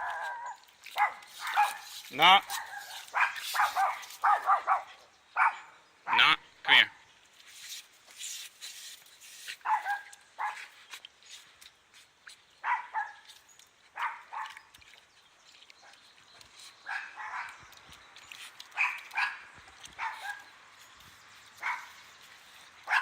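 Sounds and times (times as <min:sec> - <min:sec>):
dog barking: 0:00.0 - 0:01.9, 0:02.5 - 0:06.4, 0:09.6 - 0:10.7, 0:12.6 - 0:13.2, 0:14.0 - 0:14.6, 0:16.9 - 0:17.6, 0:18.8 - 0:19.4, 0:20.0 - 0:20.5, 0:21.6 - 0:21.9.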